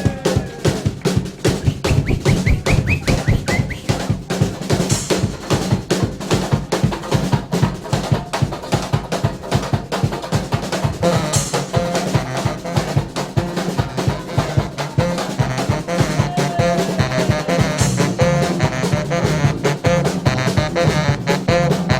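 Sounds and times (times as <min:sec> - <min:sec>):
bass drum and snare groove: 0:00.0 - 0:21.9
low bass line: 0:01.6 - 0:03.9
short horn notes: 0:11.0 - 0:21.9.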